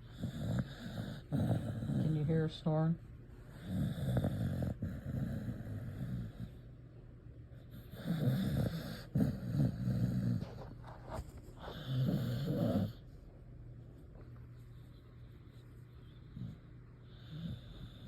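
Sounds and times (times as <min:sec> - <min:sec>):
dog snoring: 0:00.0 - 0:02.6, 0:03.5 - 0:06.7, 0:07.5 - 0:13.1, 0:15.5 - 0:18.0
dog breathing: 0:00.0 - 0:06.8, 0:07.5 - 0:13.2, 0:14.4 - 0:18.0.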